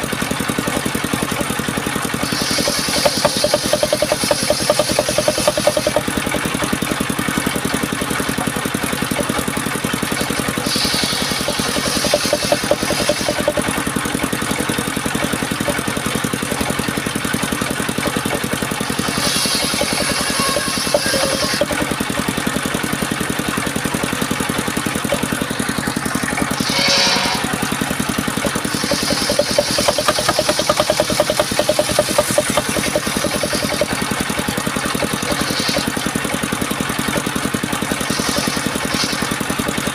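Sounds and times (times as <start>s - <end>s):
engine drone of circular saw: 0.0s - 39.9s
saw blade hissing through wood: 2.1s - 6.1s, 10.2s - 13.8s, 18.9s - 21.7s, 26.5s - 34.0s, 35.1s - 36.2s, 38.0s - 39.5s.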